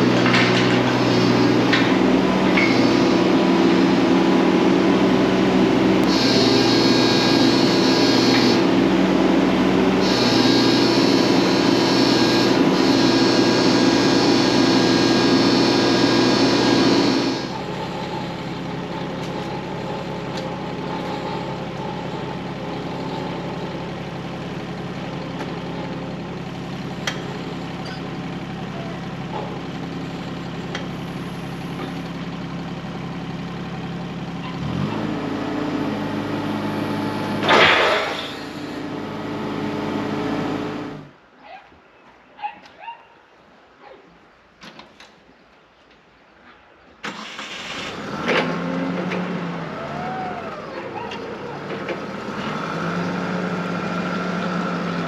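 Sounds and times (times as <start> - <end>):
engine running: 0.0 - 41.3, 47.0 - 55.0.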